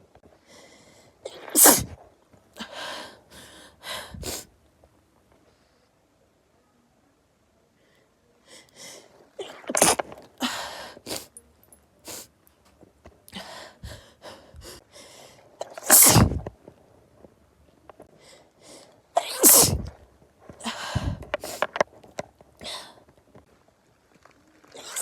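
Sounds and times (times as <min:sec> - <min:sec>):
person sneezing: 0:01.3 - 0:02.0, 0:09.4 - 0:11.3, 0:15.6 - 0:16.4, 0:19.2 - 0:19.9.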